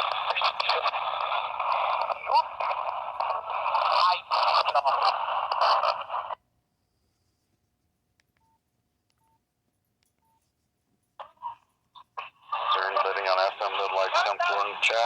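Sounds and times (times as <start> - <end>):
radio static sweeping stations: 0.0 - 6.4, 12.2 - 15.0.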